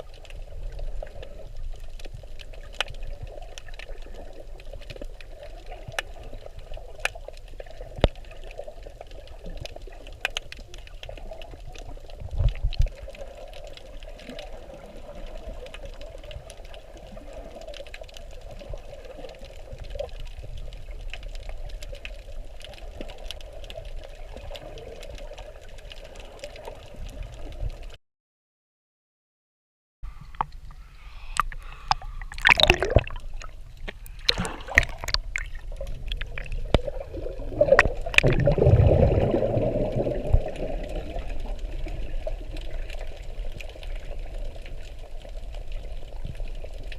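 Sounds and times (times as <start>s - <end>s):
muffled underwater wash: 0.0s - 28.0s, 30.1s - 46.9s.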